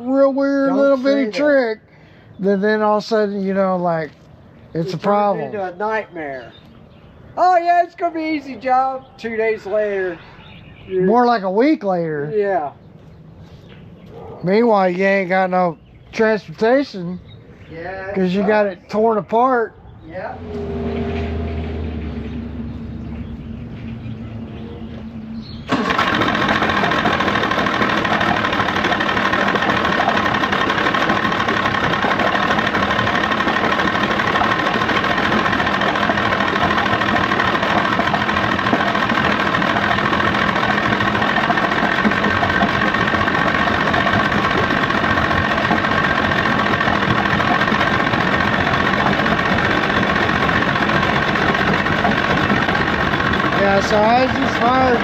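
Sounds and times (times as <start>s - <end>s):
outboard motor running: 0.0s - 4.0s, 4.8s - 5.7s, 20.4s - 55.0s
low hum: 19.7s - 55.0s.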